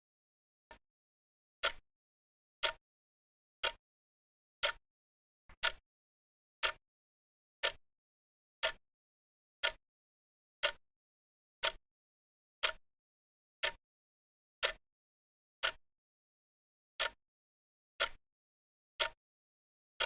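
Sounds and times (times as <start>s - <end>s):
clock ticking: 5.5s - 5.8s.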